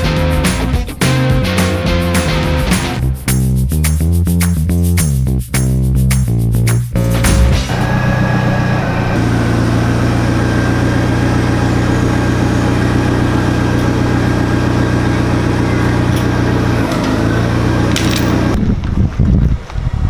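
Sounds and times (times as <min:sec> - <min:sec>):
engine idling: 0:07.3 - 0:18.6.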